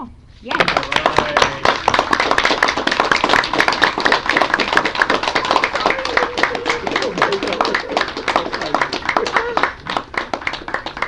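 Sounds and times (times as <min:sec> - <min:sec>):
crowd applauding: 0:00.6 - 0:11.0.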